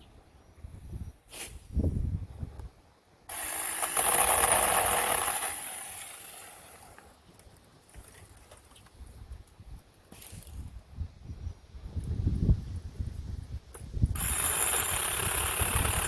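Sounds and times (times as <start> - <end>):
cordless chainsaw whirring: 3.3 - 7.1, 14.2 - 16.0.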